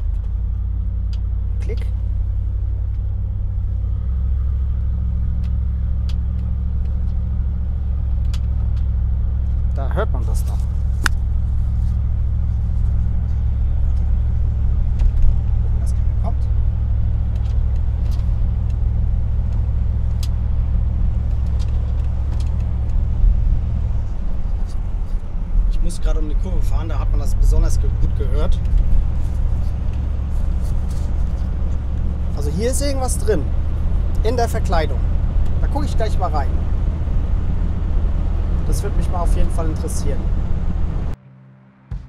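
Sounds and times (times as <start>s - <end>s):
engine and road rumble: 0.0s - 42.0s
interior trim rattling clicks: 8.0s - 9.6s, 17.2s - 23.2s.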